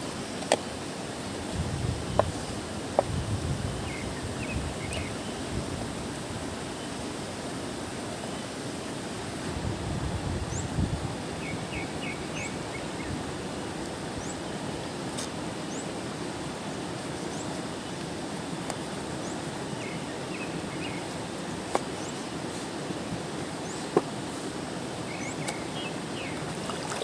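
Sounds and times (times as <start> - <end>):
steady hiss: 0.0 - 27.0
birds calling: 2.0 - 5.6, 10.4 - 27.0
high rising bird chirp: 3.6 - 5.5, 10.4 - 14.8, 15.6 - 16.0, 19.1 - 22.7, 23.3 - 24.0, 24.9 - 27.0.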